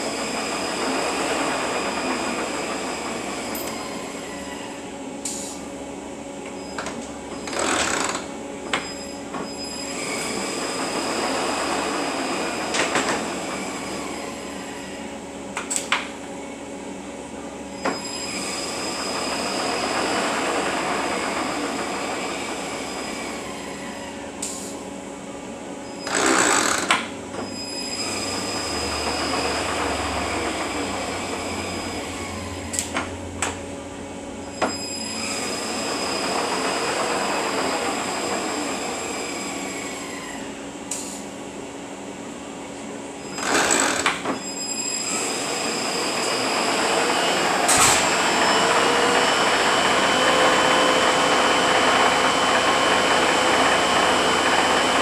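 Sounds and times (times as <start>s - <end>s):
transmission running with whine: 25.8s - 40.1s, 41.5s - 55.0s.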